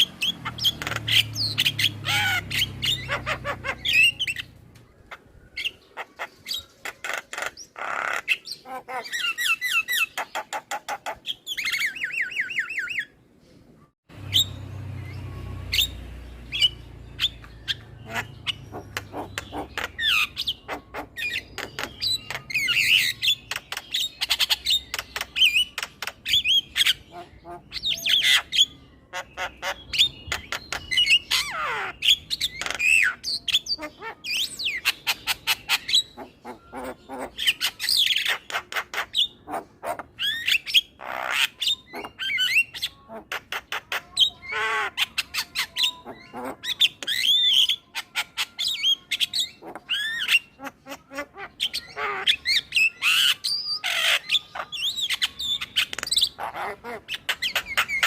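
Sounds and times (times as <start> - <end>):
myna bird singing: 0.0 - 58.0.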